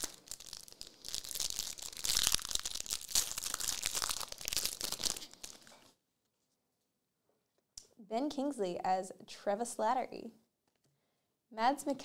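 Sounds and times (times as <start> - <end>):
foil wrapper tearing and crinkling: 0.0 - 5.9.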